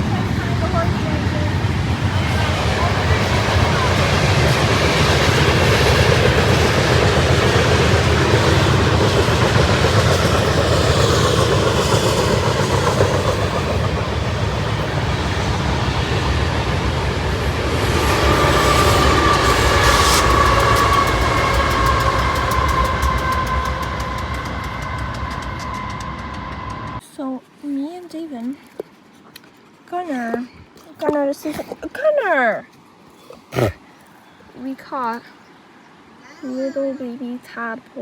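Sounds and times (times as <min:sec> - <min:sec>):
train rumbling past: 0:00.0 - 0:27.0
high whine: 0:12.4 - 0:27.0.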